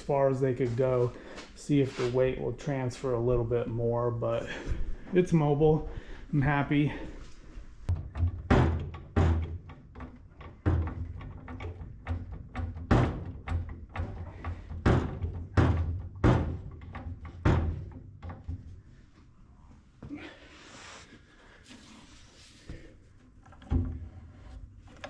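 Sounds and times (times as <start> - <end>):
sharp knocks and thuds: 7.9 - 18.9.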